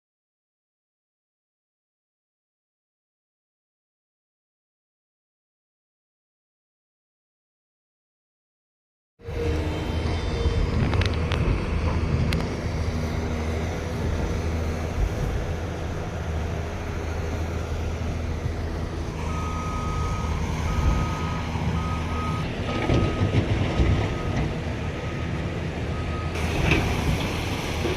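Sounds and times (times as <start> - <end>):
diesel machinery engine hum: 9.2 - 27.9
reversing alarm beeping: 19.2 - 26.7.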